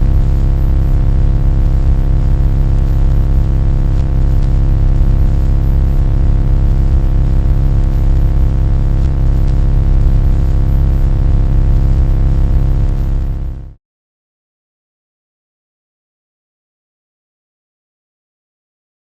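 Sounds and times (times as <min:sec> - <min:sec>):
heavy rumble: 0:00.0 - 0:11.8
loud low drone: 0:00.0 - 0:12.2.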